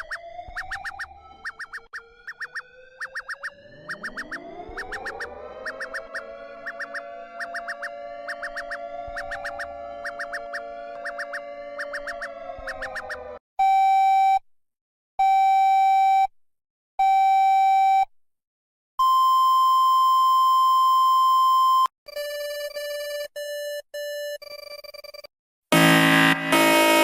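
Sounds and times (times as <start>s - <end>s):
electronic alarm beeps: 0.0s - 14.4s
rising electronic sound: 2.3s - 13.2s, 25.7s - 27.0s
long high steady tone: 25.7s - 27.0s.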